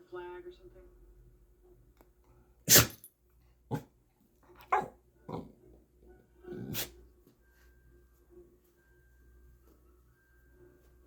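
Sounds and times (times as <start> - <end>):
dog sneezing: 2.7 - 3.1.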